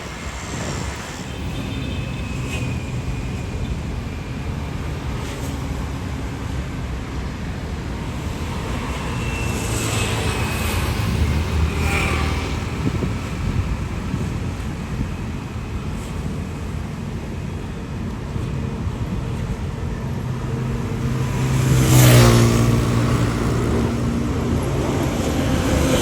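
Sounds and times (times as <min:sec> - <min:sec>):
wind buffeting microphone: 0:00.0 - 0:26.0
turboprop engines running: 0:05.7 - 0:26.0.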